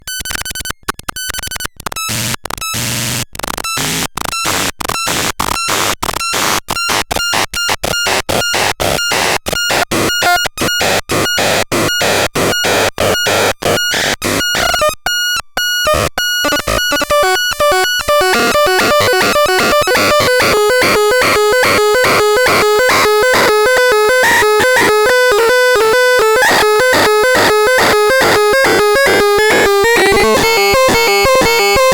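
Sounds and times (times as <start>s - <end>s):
electronic beep tone: 13.2s - 31.9s.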